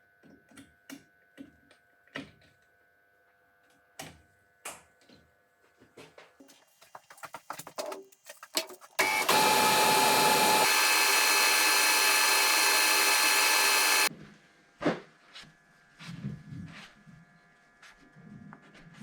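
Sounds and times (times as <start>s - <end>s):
metal lathe whirring: 9.0s - 14.1s.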